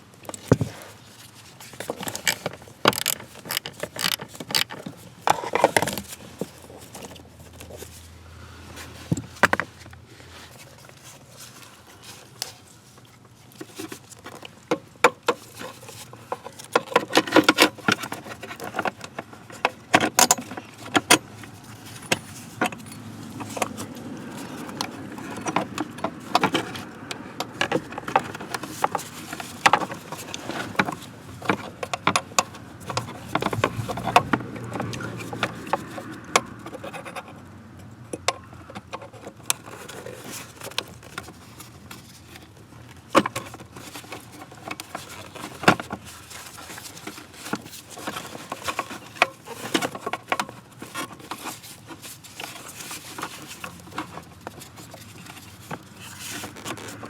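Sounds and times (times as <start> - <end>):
hand tools clicking and clattering: 1.6 - 8.0, 13.6 - 37.3.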